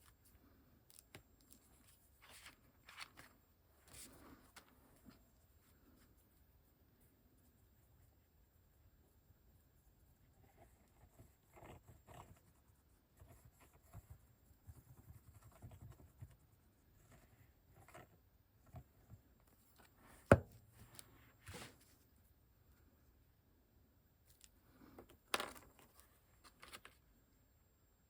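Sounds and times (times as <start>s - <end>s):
paper rustling: 0.0s - 5.2s, 20.8s - 22.0s, 25.4s - 27.0s.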